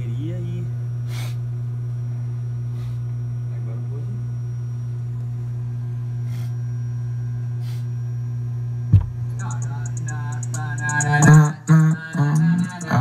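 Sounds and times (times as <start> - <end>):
electrical hum through speakers: 0.0 - 13.0
speaker thump: 8.9 - 9.4
music through car speakers: 9.0 - 13.0.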